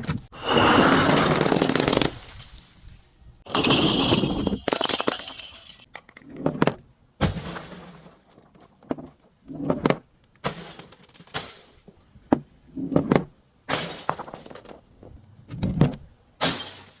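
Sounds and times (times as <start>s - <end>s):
glass breaking and crunching: 1.1s - 5.9s, 16.4s - 17.0s.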